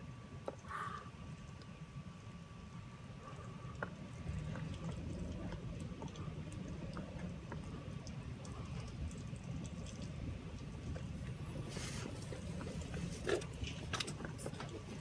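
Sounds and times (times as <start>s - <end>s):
light taps and ticks: 3.7s - 11.4s.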